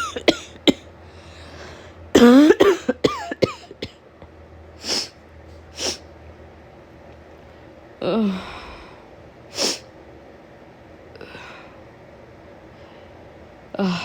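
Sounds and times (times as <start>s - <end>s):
woman coughing: 0.0s - 0.9s, 2.2s - 4.0s
soft breath: 1.0s - 2.0s, 7.5s - 9.8s, 11.2s - 11.9s, 12.7s - 14.0s.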